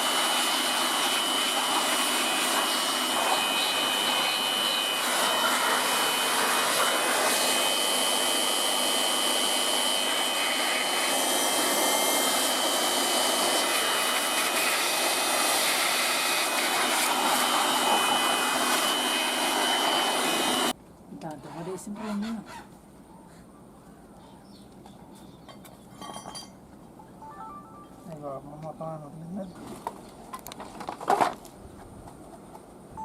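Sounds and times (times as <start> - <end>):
pressure washer spraying water: 0.0 - 20.7.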